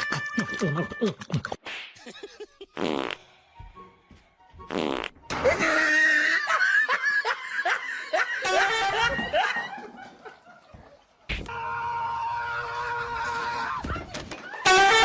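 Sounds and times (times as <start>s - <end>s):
person laughing hard: 5.4s - 10.8s.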